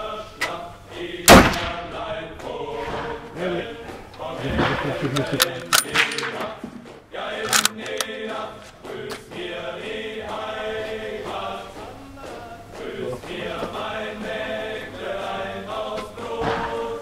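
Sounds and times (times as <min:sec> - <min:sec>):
choir singing sustained chords: 0:00.0 - 0:17.0
sharp crack: 0:01.3 - 0:01.8.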